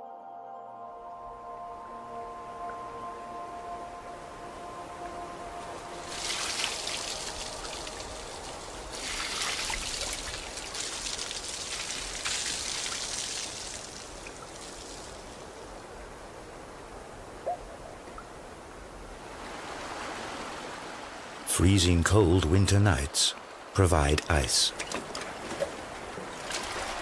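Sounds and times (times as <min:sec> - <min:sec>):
water trickling in a stream: 0:02.6 - 0:21.4, 0:24.7 - 0:27.0.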